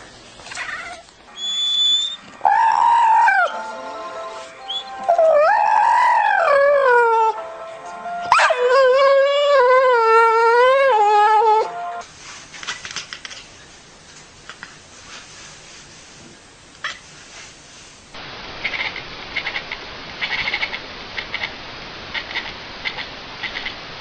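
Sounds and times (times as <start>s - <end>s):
dog howling: 0.6s - 3.6s, 4.7s - 7.4s, 8.3s - 11.8s
thin high whistle: 1.3s - 2.6s, 3.2s - 5.3s.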